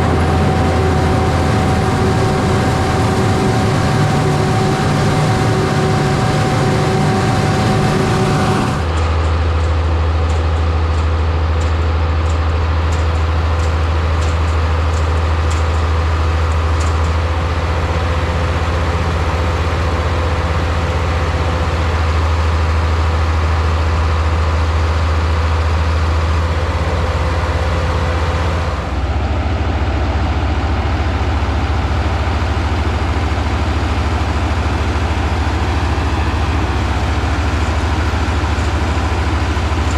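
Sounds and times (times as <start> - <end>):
diesel engine droning: 0.0 - 39.9.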